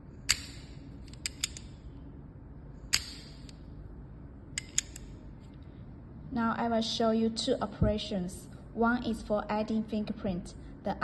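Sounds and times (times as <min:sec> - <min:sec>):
padlock clicking: 0:00.2 - 0:01.9, 0:02.9 - 0:03.6, 0:04.5 - 0:05.2
padlock light ticks: 0:00.3 - 0:01.8, 0:02.9 - 0:03.6, 0:04.6 - 0:05.2.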